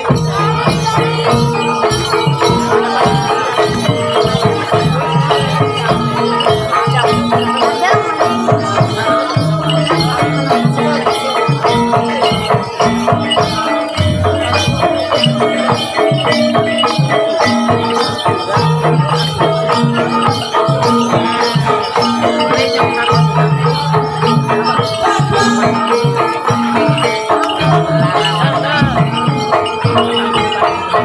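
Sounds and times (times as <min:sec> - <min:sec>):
percussion ensemble music: 0:00.0 - 0:31.0.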